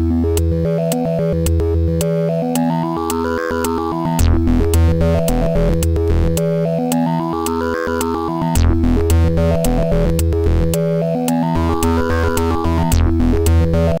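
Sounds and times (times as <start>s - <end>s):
electronic music with synths: 0.0s - 14.0s.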